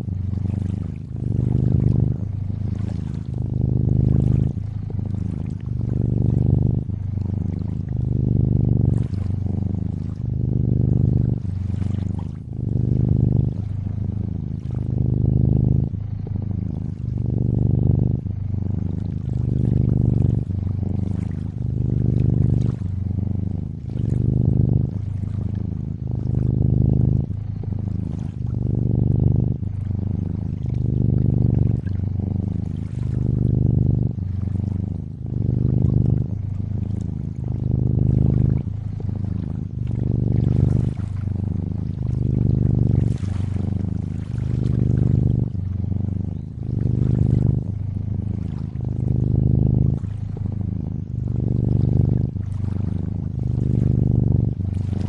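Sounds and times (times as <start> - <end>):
cat purring: 0.0 - 55.0.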